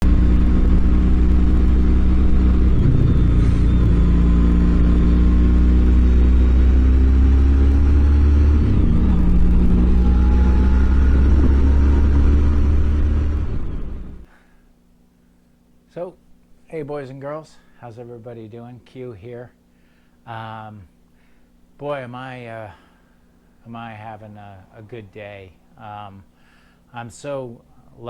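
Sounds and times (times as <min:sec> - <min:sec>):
motorcycle engine rumbling: 0:00.0 - 0:14.3.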